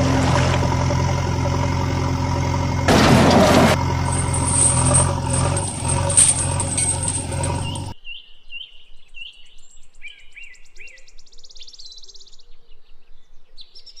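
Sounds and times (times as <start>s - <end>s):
loud vehicle-like noise: 0.0s - 8.0s
birds chirping: 3.8s - 8.2s.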